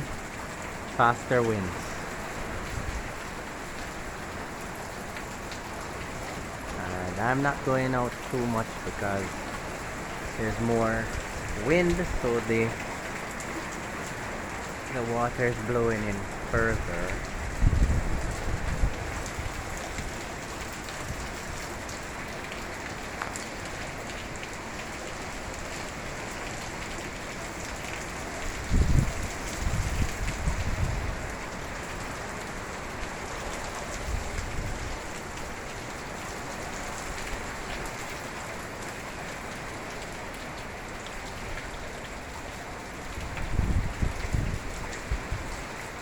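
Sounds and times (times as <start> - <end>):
heavy rain falling: 0.0 - 46.0
wind gusting on microphone: 16.2 - 20.2, 28.5 - 31.4, 43.2 - 45.6.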